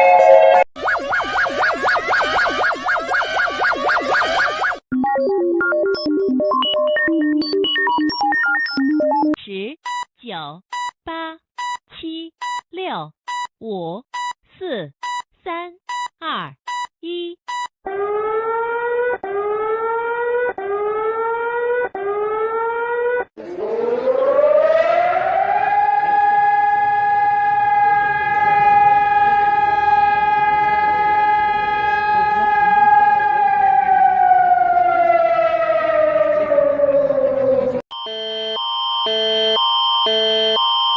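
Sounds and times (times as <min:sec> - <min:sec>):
civil defense siren winding: 0:00.0 - 0:04.8, 0:17.9 - 0:40.9
rising siren whoops: 0:00.0 - 0:04.8, 0:17.9 - 0:40.9.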